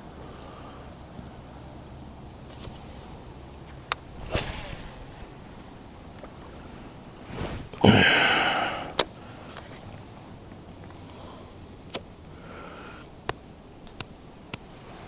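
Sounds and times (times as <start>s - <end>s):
fishing rod swish: 4.0s - 6.0s.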